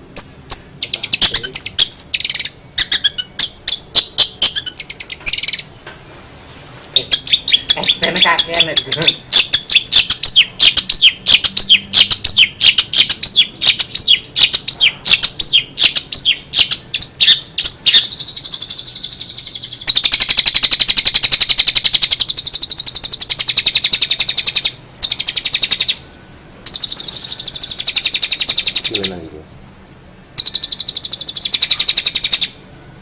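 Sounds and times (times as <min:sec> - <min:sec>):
bird high sharp chirps: 0:00.0 - 0:05.7, 0:06.8 - 0:29.6, 0:30.4 - 0:32.6
bird rapid buzzing trill: 0:06.8 - 0:29.1.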